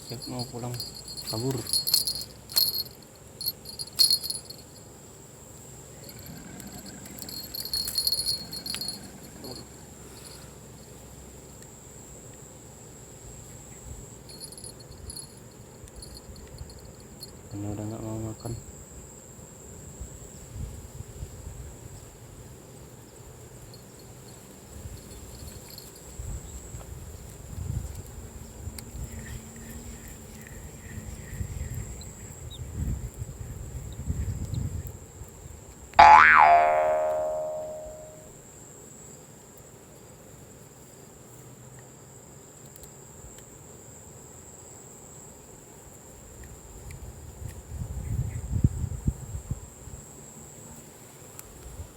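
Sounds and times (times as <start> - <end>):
low background hiss: 0.0 - 27.3, 36.0 - 38.3
insects droning: 0.0 - 51.9.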